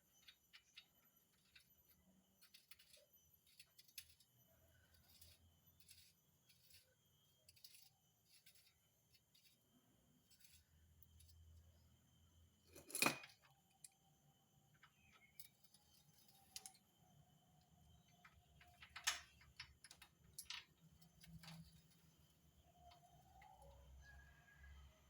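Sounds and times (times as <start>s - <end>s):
metallic clicks of tools: 18.2s - 21.8s.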